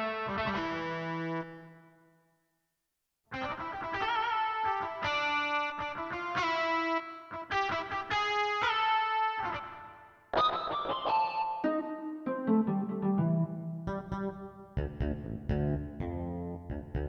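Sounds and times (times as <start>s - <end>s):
synthesizer melody with vibrato: 10.8s - 14.7s.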